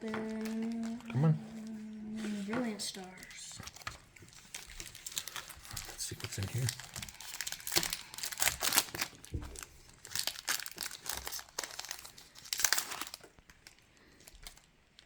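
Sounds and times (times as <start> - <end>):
foil wrapper crinkling and tearing: 3.1 - 15.0.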